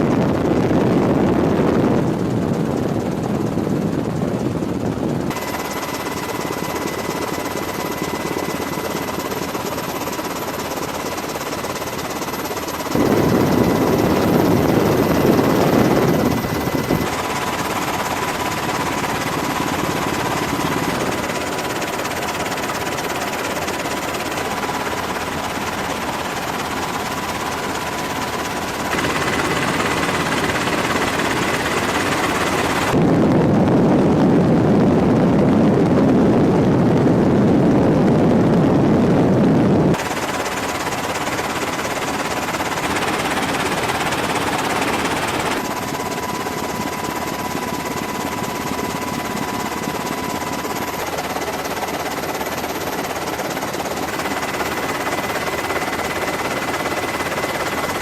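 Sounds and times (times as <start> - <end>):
rushing air: 12.9 - 21.5.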